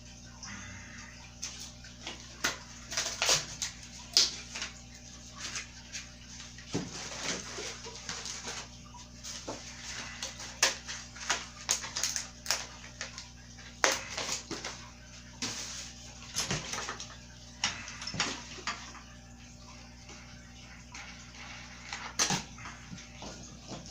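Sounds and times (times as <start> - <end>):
steady low hum: 0.0 - 3.0.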